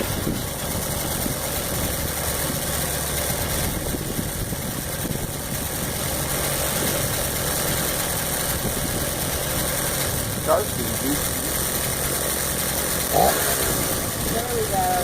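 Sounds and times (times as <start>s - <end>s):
two-stroke cultivator engine running: 0.0s - 15.0s.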